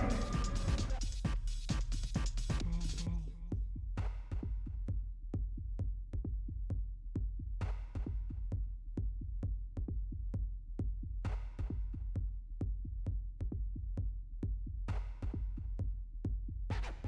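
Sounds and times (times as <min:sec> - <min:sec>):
electronic dance music: 0:00.0 - 0:01.1.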